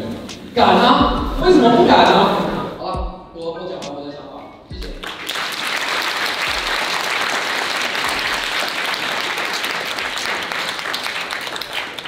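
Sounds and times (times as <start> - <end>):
audience applauding: 4.8 - 12.0.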